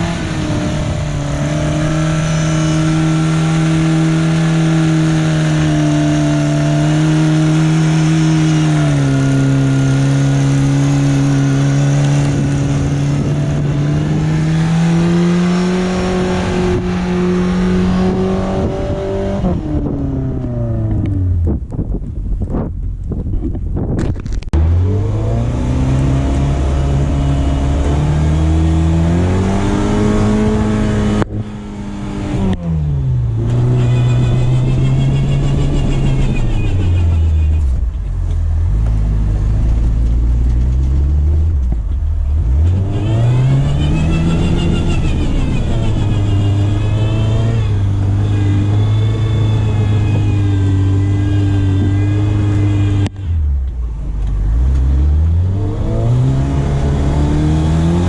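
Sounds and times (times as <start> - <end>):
engine revving hard: 0.0 - 20.0, 24.6 - 32.6, 42.4 - 53.3, 54.5 - 58.0.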